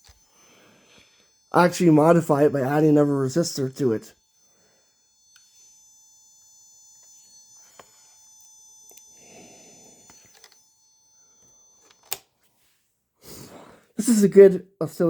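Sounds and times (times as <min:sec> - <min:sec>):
high-pitched electronic tone: 0:00.0 - 0:11.8.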